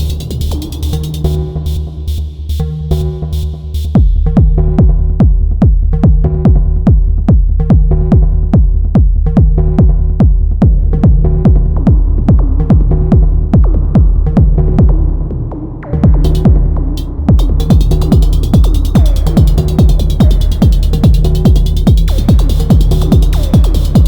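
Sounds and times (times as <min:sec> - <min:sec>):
hi-hats: 0:00.0 - 0:04.5, 0:16.2 - 0:24.0
droning bass: 0:00.0 - 0:15.2, 0:16.0 - 0:24.0
techno kick drum: 0:00.0 - 0:24.0
pitched percussive hits: 0:16.3 - 0:24.0.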